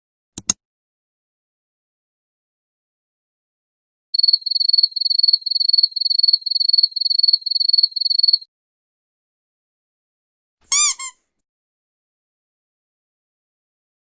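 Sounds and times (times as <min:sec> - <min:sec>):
cricket chirping: 0:04.2 - 0:08.5.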